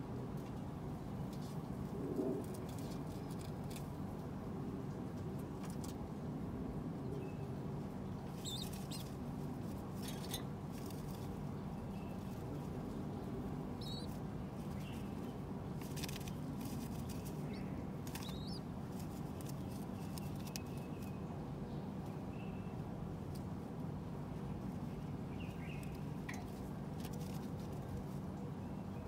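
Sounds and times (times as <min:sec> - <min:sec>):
low background rumble: 0:00.0 - 0:29.0
feathers rustling and scratching: 0:01.3 - 0:04.1, 0:08.3 - 0:21.2, 0:25.6 - 0:28.4.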